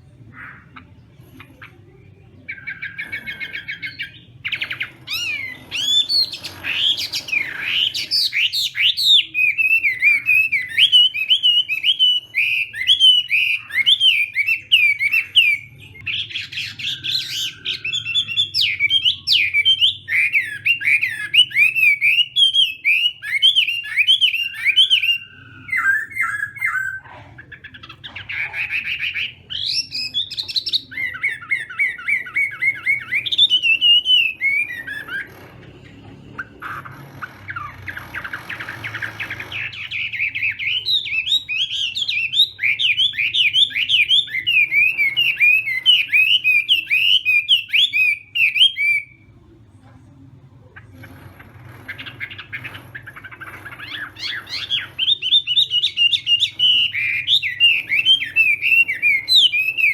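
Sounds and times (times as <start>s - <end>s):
bird singing whistled notes: 2.5s - 27.0s, 39.6s - 49.2s, 53.9s - 59.9s.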